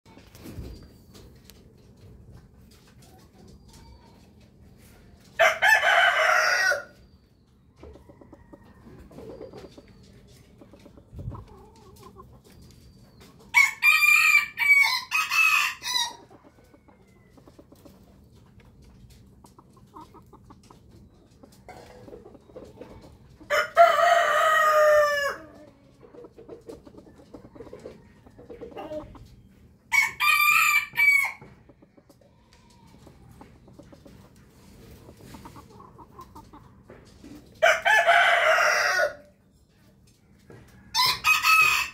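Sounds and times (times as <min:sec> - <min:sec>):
chickens clucking: 0:00.1 - 0:41.9
roosters crowing: 0:05.3 - 0:07.0, 0:13.5 - 0:17.7, 0:23.4 - 0:25.8, 0:29.8 - 0:31.7, 0:37.6 - 0:39.4, 0:40.5 - 0:41.9.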